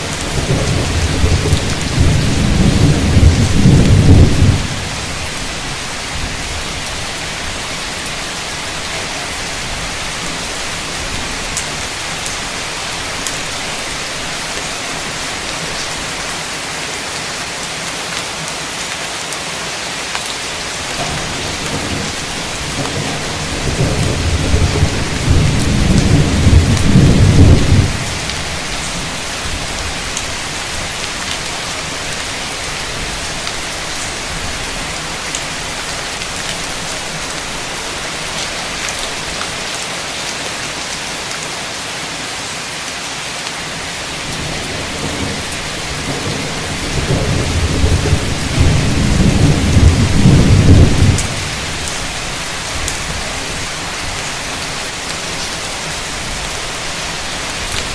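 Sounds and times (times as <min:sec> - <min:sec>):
thunder rumbling: 0:00.0 - 0:07.1, 0:20.9 - 0:30.0, 0:44.2 - 0:52.2
heavy rain pouring: 0:00.0 - 0:57.9.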